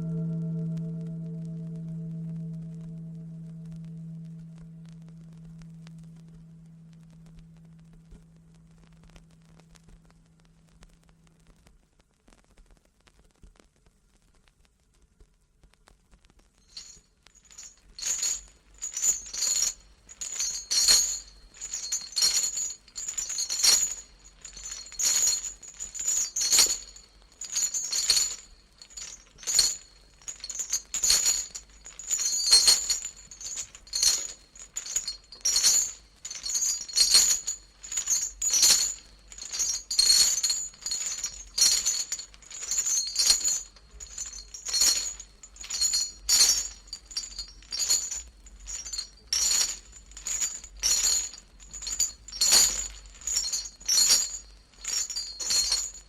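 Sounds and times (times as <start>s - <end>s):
sharp metallic clinks: 16.7s - 56.0s.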